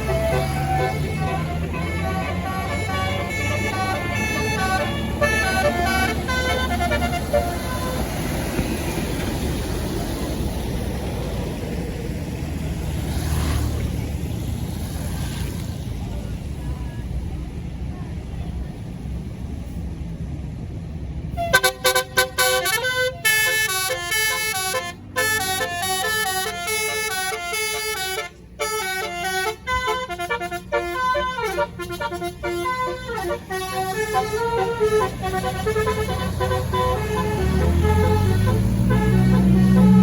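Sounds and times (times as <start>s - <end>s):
musical air horn tune: 0.0s - 8.3s, 21.3s - 40.0s
bus engine rumbling: 0.0s - 40.0s.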